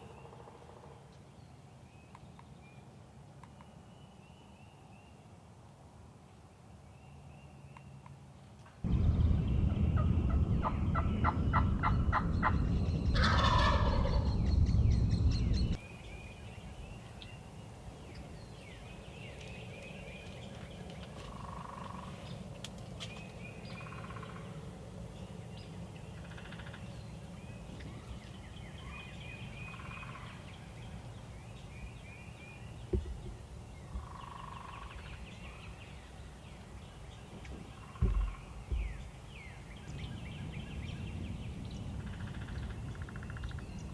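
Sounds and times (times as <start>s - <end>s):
songbirds chirping: 0.0s - 5.5s, 6.3s - 43.9s
low rumble: 8.8s - 15.9s
turkey gobbling: 10.0s - 14.6s.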